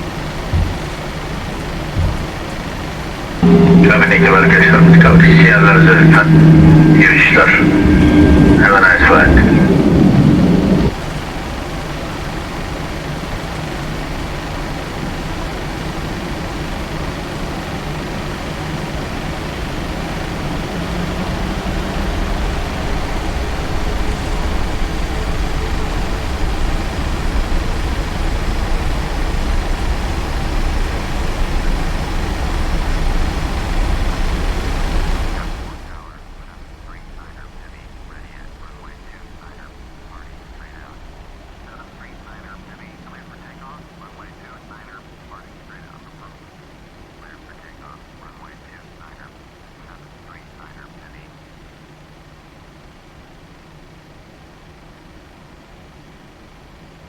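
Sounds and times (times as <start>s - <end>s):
jet engines rumbling in cabin: 0.0s - 57.0s.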